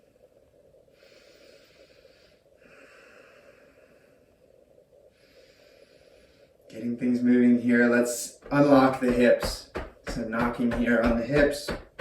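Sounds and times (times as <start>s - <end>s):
person breathing deeply: 0.9s - 4.4s, 5.1s - 6.6s.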